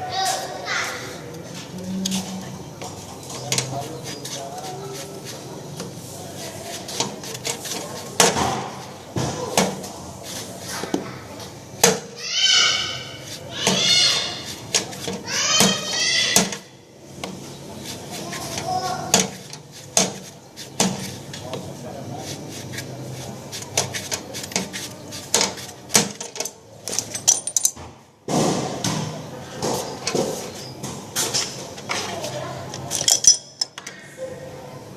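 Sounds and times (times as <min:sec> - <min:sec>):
sharp knocks and clattering: 0:06.9 - 0:09.9, 0:23.6 - 0:32.2
metal tools clinking: 0:26.1 - 0:27.8, 0:32.7 - 0:33.8.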